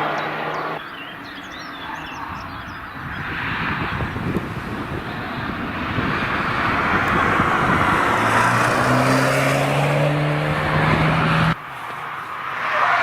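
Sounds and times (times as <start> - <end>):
car approaching at speed: 0.0 - 13.0.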